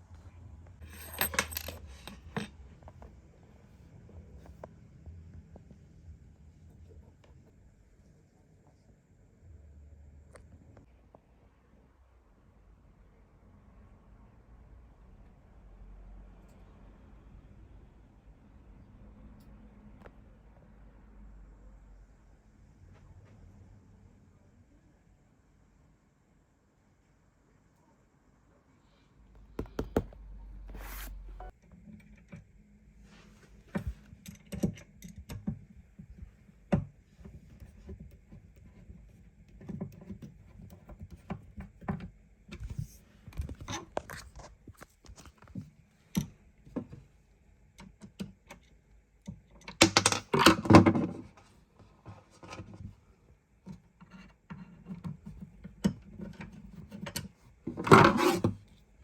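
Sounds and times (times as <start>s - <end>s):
clattering of parts: 0.8s - 3.0s
furniture parts knocking and scraping: 29.5s - 30.2s.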